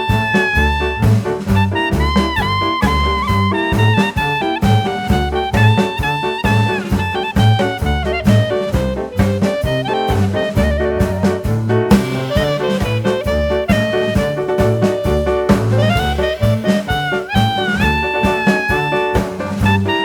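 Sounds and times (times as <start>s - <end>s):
upbeat jazz with horns: 0.0s - 20.0s.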